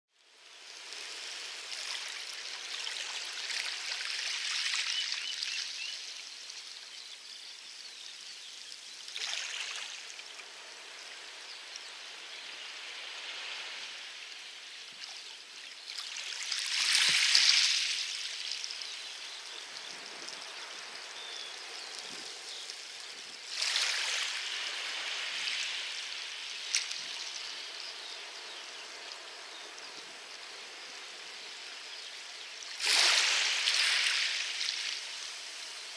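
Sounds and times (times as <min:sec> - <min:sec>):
waves splashing on pebble beach: 0:32.8 - 0:35.6.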